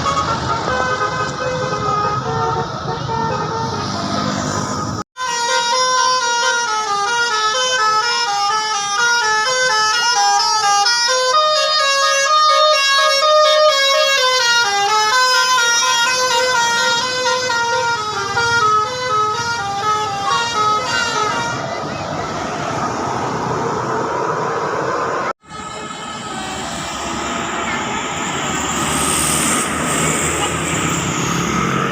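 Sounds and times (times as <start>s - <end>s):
bus engine and road noise: 0.0s - 31.9s
multi-tone air horn tune: 5.2s - 21.6s.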